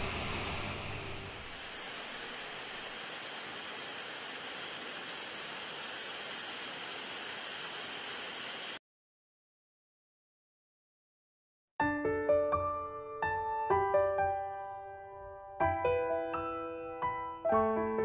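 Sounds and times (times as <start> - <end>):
waterfall rushing: 1.2 - 8.8.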